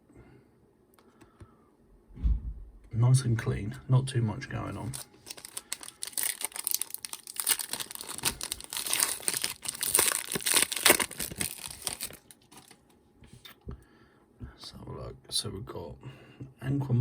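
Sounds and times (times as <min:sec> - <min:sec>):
foil wrapper crinkling: 0:04.8 - 0:12.8.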